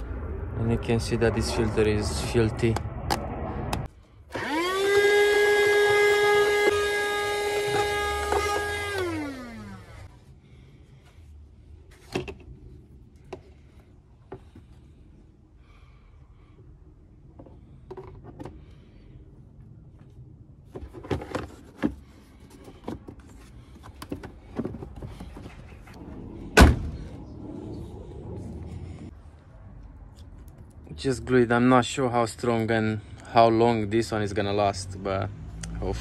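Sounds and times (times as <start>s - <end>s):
car parts clicking and knocking: 20.7s - 26.0s.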